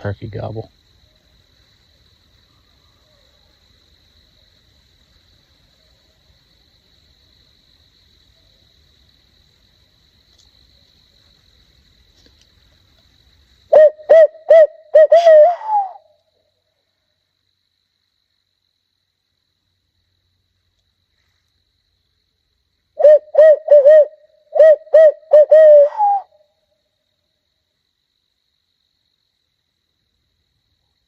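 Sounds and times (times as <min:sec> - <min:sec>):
high insect trill: 0:00.0 - 0:31.0
owl call hoots: 0:13.7 - 0:16.2, 0:23.0 - 0:26.4.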